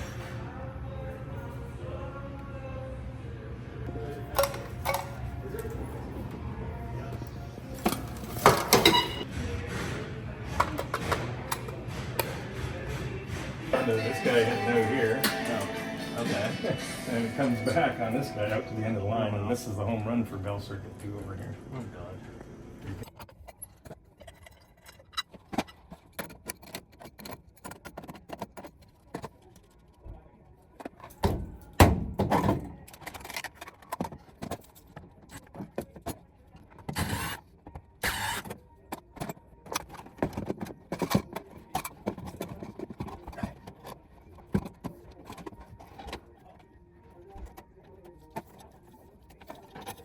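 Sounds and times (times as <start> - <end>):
tools and hardware clattering: 4.0 - 6.4, 7.0 - 18.6, 23.0 - 29.9, 30.8 - 46.7, 47.5 - 50.0.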